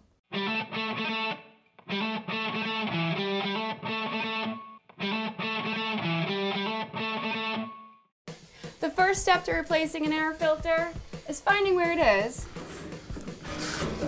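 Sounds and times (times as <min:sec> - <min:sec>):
distorted electric guitar strumming: 0:00.3 - 0:07.9.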